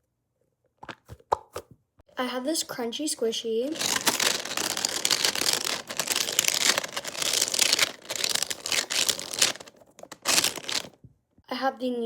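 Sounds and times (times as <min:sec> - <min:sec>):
squishy toy crackling crunch: 0:03.7 - 0:11.0.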